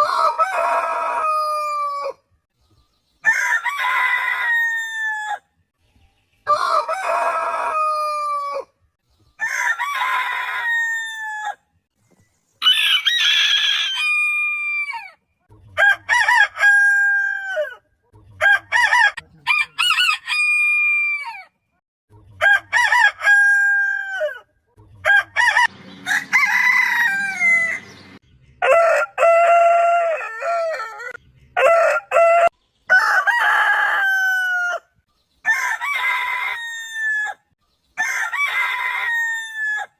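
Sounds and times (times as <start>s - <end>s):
roosters crowing: 0.0s - 2.2s, 3.2s - 5.5s, 6.5s - 8.7s, 9.4s - 11.6s, 12.6s - 15.2s, 15.8s - 17.8s, 18.4s - 21.5s, 22.4s - 39.9s.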